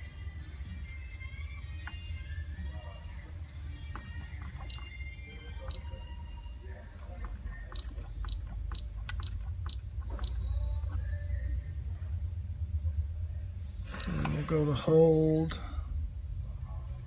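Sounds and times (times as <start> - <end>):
thermostat beeping: 4.0 - 10.5, 13.9 - 14.4.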